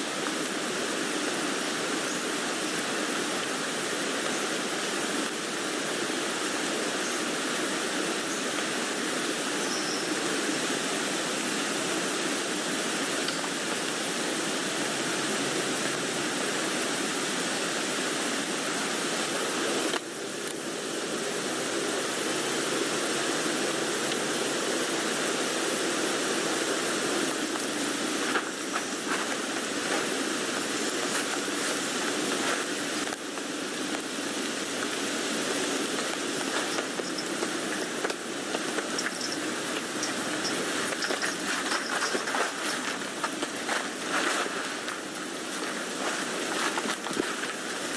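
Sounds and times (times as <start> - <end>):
rain falling on a tent: 0.0 - 47.9.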